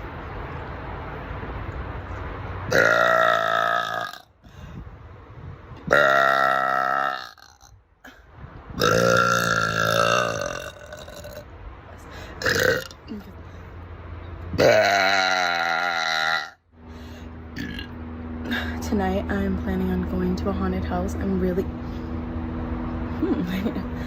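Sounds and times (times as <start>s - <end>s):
woman burping loudly: 2.7s - 4.3s, 5.9s - 11.5s, 12.4s - 13.4s, 14.6s - 16.6s, 17.6s - 17.9s.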